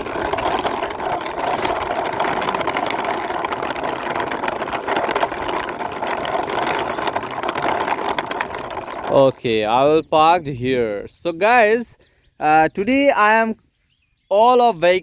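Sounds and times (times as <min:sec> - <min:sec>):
toy vehicle wheels whirring rattle: 0:00.0 - 0:09.4.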